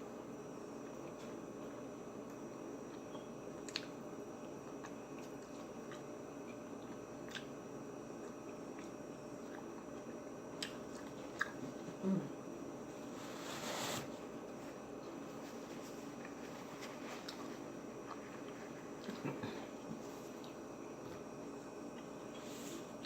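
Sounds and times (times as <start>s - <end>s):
person chewing food: 2.3s - 7.6s, 8.2s - 11.7s, 17.2s - 19.8s.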